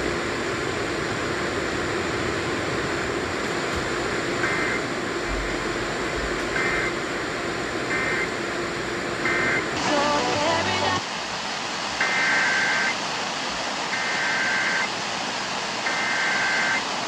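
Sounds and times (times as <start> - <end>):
radio static hiss: 2.4 - 17.0
warbling data bursts: 6.5 - 7.0, 12.0 - 13.0.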